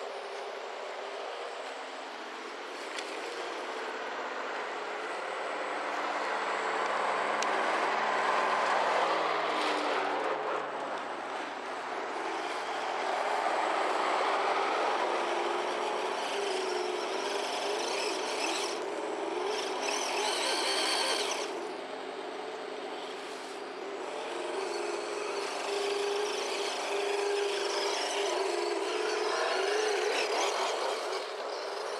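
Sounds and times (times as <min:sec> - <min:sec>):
high-pitched whine: 0:00.0 - 0:31.9
rushing noise of toy truck driving: 0:00.0 - 0:31.9.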